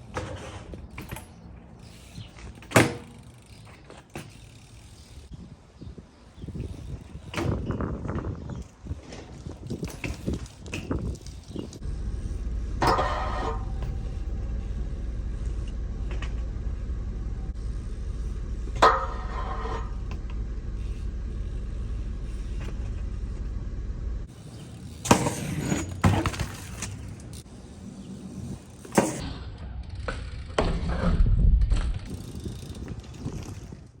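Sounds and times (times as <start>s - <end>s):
bike rolling rumble: 0.0s - 34.0s
bike landing bangs: 2.4s - 4.5s, 9.1s - 21.1s, 24.6s - 27.4s, 28.8s - 29.4s
metallic clank: 12.6s - 14.7s.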